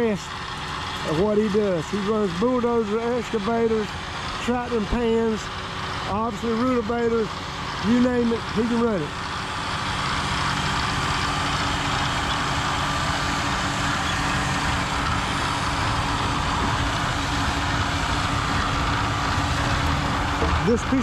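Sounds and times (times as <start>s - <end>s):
tractor diesel engine droning: 0.0s - 21.0s
broad rushing noise: 8.9s - 21.0s.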